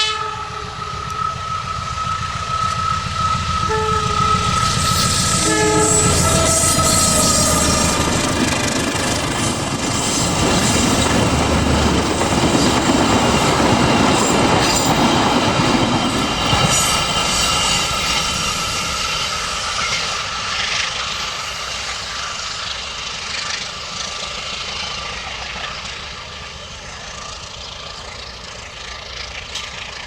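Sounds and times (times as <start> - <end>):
train cars rolling over rails: 0.4 - 30.0.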